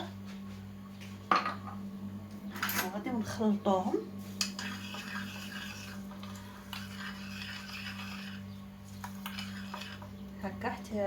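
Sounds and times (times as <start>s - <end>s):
stirring liquid in a pot: 4.2s - 10.5s.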